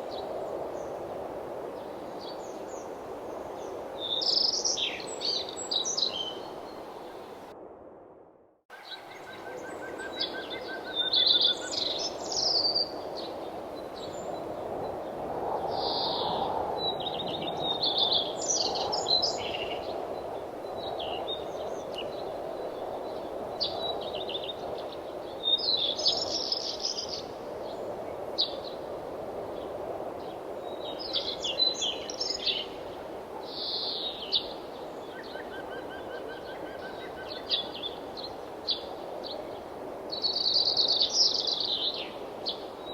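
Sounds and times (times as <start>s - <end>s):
songbirds chirping and trilling: 2.2s - 7.3s
wind rushing: 10.5s - 33.4s.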